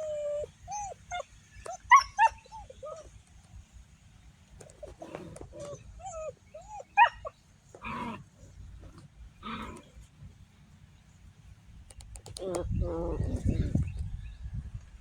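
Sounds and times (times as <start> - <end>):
puppy yelp: 0.0 - 3.1, 4.9 - 8.2
puppies whimpering and yipping: 0.0 - 3.2, 4.7 - 8.2, 12.3 - 13.8
puppy barks: 5.6 - 8.2.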